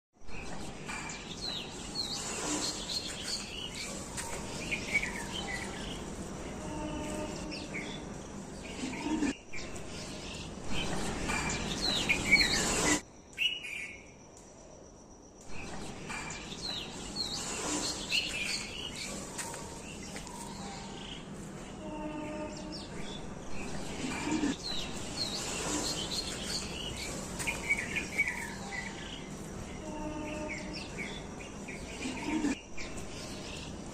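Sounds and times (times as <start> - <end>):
small birds chirping: 0.3 - 14.1, 15.5 - 33.9
insect hum: 21.4 - 33.9.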